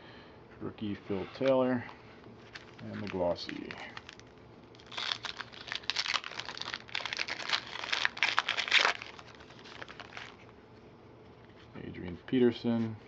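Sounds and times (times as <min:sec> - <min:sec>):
wrapper crinkling: 0:02.4 - 0:10.5.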